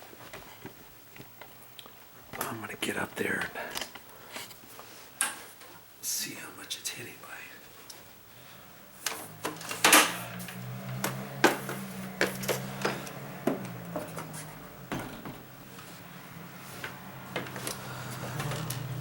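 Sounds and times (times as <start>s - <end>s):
objects knocking and clattering: 10.9s - 15.9s.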